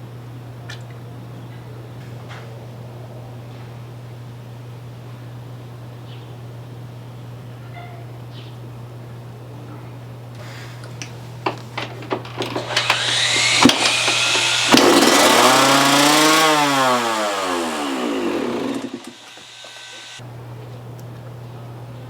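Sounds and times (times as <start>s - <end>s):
dirt bike engine starting and dying: 11.8s - 20.2s.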